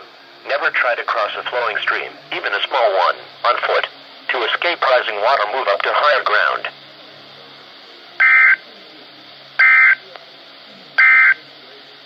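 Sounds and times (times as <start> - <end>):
low hiss: 0.0 - 12.0
short digital data bursts: 8.2 - 8.6, 9.6 - 10.0, 11.0 - 11.4.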